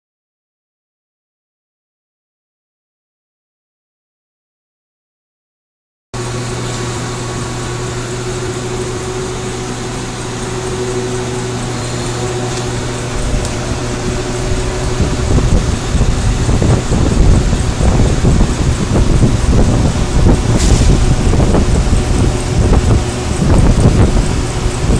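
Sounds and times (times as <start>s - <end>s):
lathe machine hum: 6.2s - 24.9s
low uneven rumble: 6.3s - 24.9s.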